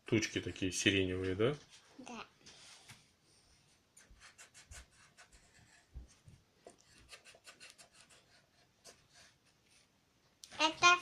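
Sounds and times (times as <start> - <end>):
coloured pencil scratching on paper: 4.0 - 9.9.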